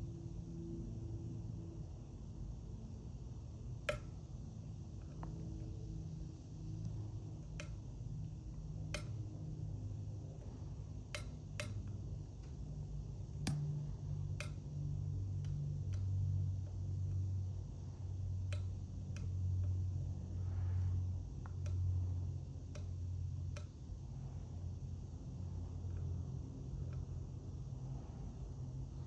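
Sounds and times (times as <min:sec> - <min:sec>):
steady low hum: 0:00.0 - 0:29.0
lock pick clicking: 0:11.2 - 0:12.0.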